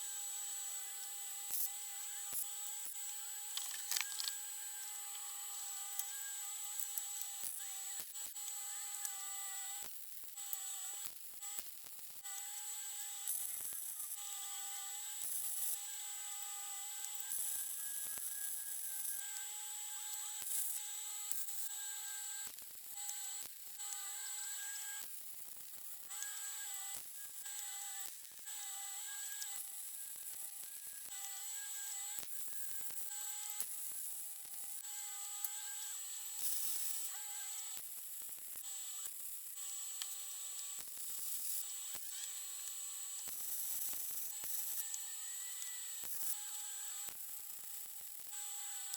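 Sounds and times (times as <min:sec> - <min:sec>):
power grinder grinding metal: 0:01.9 - 0:07.9.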